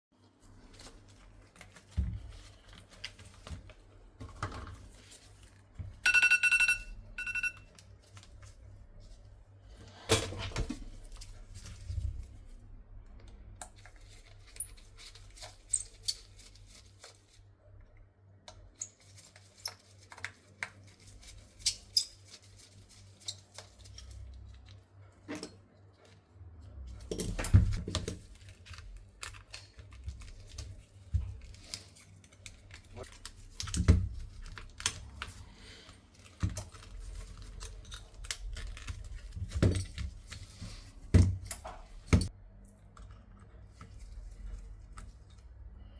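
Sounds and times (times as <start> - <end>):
handling rustle: 0.2 - 6.0, 13.8 - 17.5, 18.8 - 42.3
electronic device beeping: 6.1 - 7.6.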